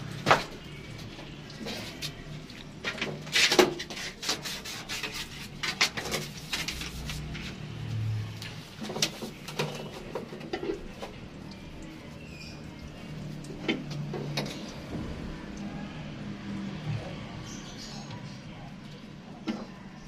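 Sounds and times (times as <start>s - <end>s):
knocks clicks and scrapes on pipe: 2.8s - 7.6s, 8.8s - 11.2s.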